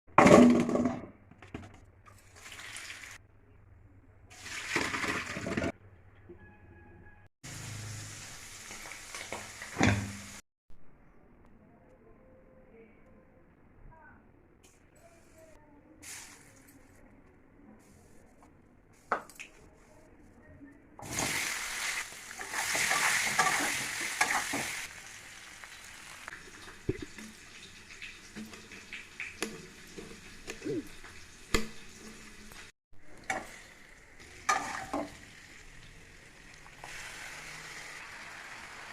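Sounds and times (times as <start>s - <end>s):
water running in kitchen: 0.2s - 3.2s, 4.3s - 5.8s, 7.4s - 10.4s, 21.0s - 38.9s
food sizzling in hot oil: 2.3s - 3.2s, 7.5s - 10.4s, 21.0s - 38.9s.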